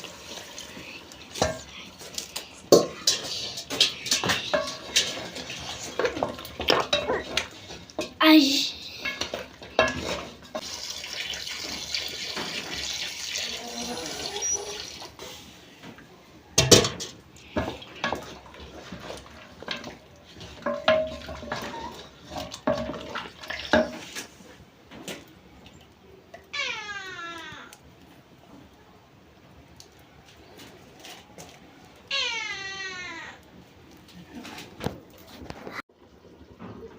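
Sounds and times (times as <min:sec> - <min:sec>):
liquid hissing in pot: 0:00.0 - 0:07.8
metal utensil scraping pot: 0:00.0 - 0:10.8, 0:16.6 - 0:24.4.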